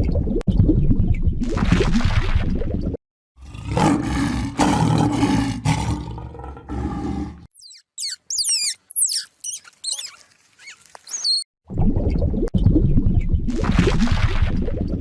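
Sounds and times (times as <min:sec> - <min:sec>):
big cat roaring: 0:03.4 - 0:07.5
high-pitched squeaks: 0:07.5 - 0:11.5.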